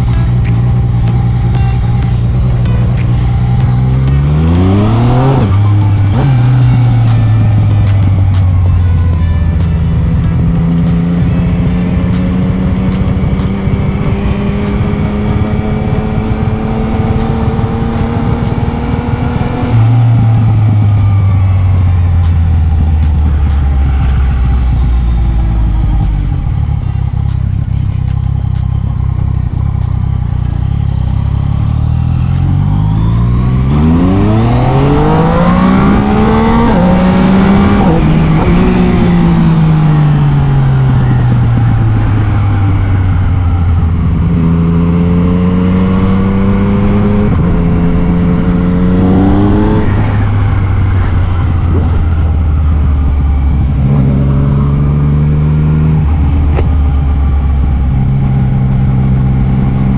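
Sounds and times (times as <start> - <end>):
motorcycle engine revving: 0.0 - 59.9
wind and road noise: 0.0 - 59.9.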